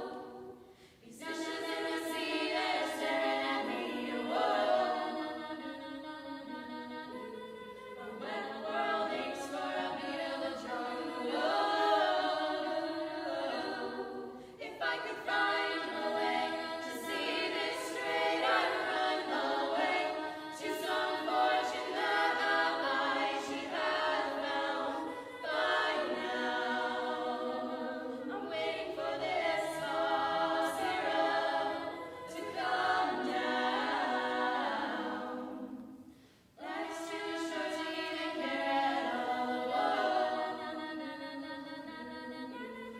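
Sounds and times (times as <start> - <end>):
women singing a cappella: 0.0 - 42.9.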